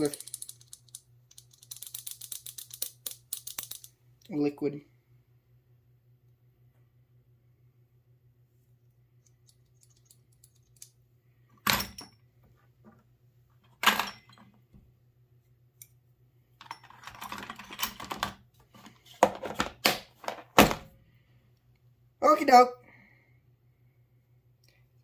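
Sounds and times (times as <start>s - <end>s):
rattling and clicking of parts: 0.0s - 4.0s, 9.2s - 11.0s, 16.6s - 20.8s.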